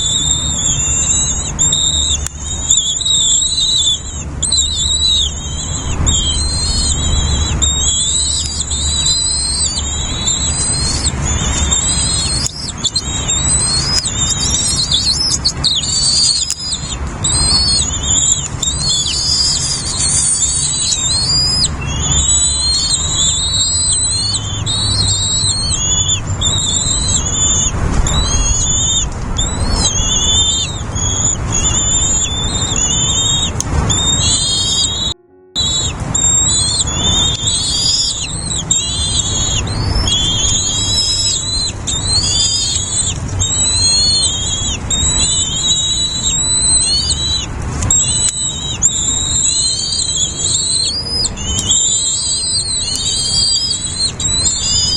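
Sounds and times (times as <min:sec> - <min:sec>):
low rumble: 0:00.0 - 0:43.8
nestlings chirping: 0:00.0 - 0:54.9.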